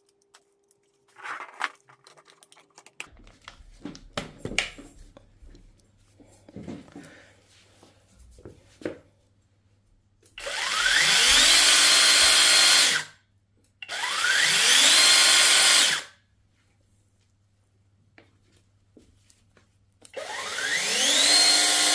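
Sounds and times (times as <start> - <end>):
electric chainsaw motor whining: 10.4 - 13.1, 13.9 - 16.1, 20.2 - 21.9.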